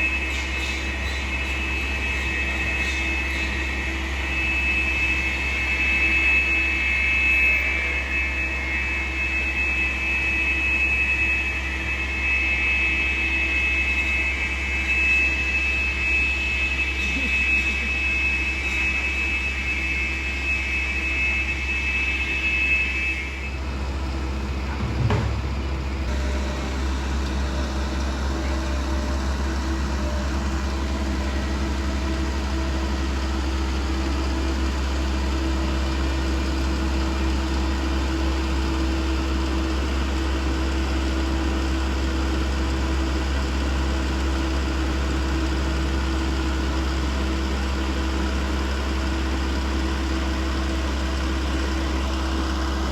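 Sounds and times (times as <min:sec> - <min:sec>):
distant engine drone: 0:00.0 - 0:52.9
high steady whine: 0:00.0 - 0:52.9
single thump: 0:24.7 - 0:25.7.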